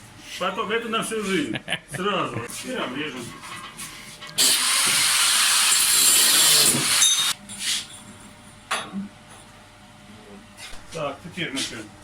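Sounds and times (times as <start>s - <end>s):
harsh hiss of metal cutting: 4.4s - 7.3s.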